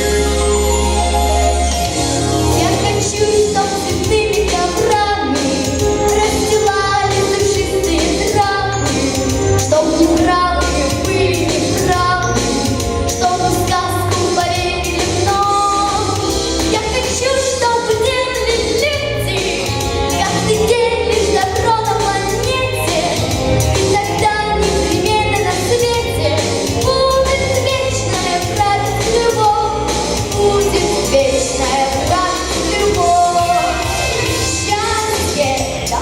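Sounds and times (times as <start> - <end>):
pop backing track with bass beat: 0.0 - 36.0
person singing: 26.9 - 36.0.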